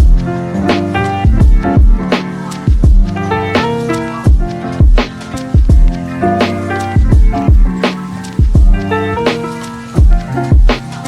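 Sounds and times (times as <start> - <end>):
electronic beat music: 0.0 - 11.0
held melodic notes: 0.0 - 11.0
deep bass drum hits: 1.3 - 2.1, 2.7 - 3.1, 7.0 - 8.9.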